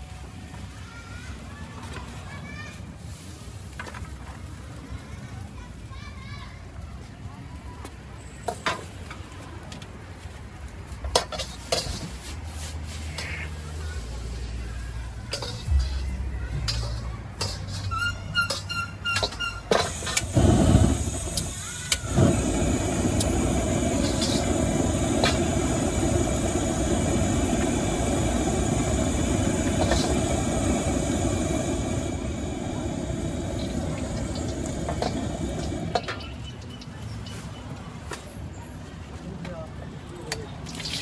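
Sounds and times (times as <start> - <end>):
gas burner roaring: 11.1 - 36.5
loud whoosh of gas igniting: 19.6 - 36.2.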